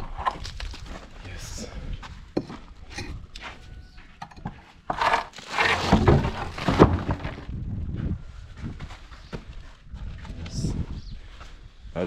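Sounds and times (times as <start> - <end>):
wood cracking and scraping: 0.0 - 1.3, 4.9 - 7.6.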